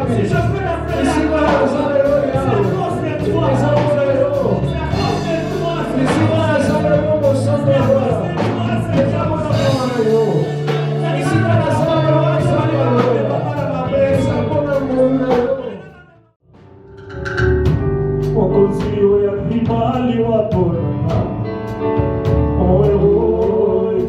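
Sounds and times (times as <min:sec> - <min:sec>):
person singing: 0:00.0 - 0:16.3, 0:22.4 - 0:24.0
worship band music: 0:00.0 - 0:24.0.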